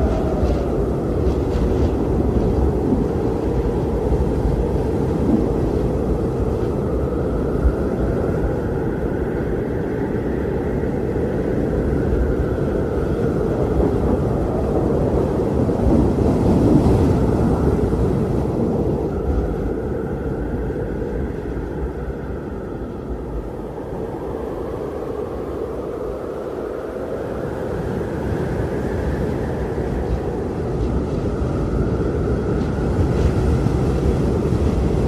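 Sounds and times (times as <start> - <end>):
faint wind whistle: 0.0 - 35.0
strong wind rumbling: 0.0 - 35.0.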